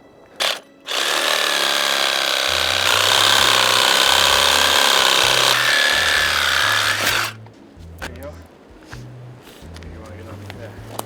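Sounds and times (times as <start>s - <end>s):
electric chainsaw whining: 0.4s - 7.4s.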